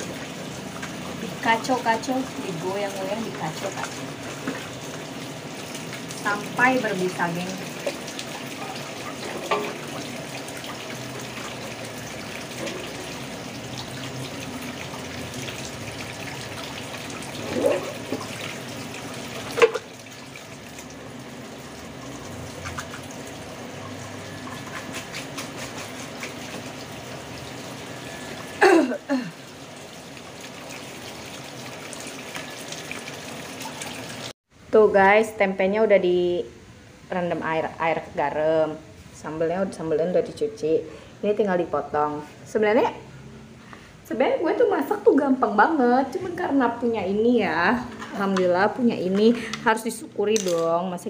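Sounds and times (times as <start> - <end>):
tap water running into sink: 0.0 - 28.8, 29.6 - 34.3.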